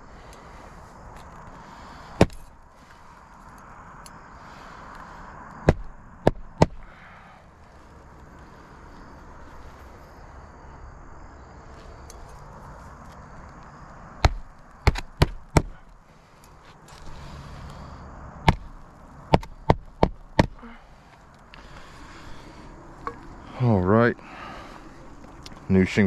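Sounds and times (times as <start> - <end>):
hatchet hammering nails: 5.6 - 6.8, 14.2 - 15.8, 19.3 - 20.6.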